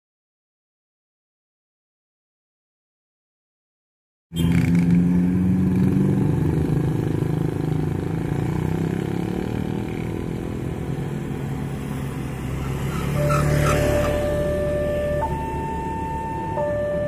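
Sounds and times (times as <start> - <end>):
electronic warning siren tone: 13.0 - 17.0.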